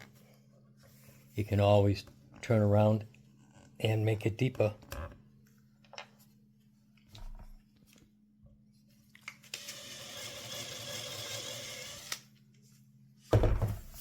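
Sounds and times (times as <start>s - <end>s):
power drill running: 9.5s - 12.3s.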